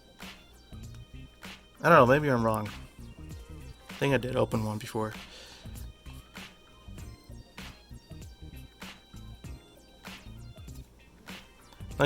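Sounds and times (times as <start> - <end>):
quiet background music with beat: 0.0 - 12.0.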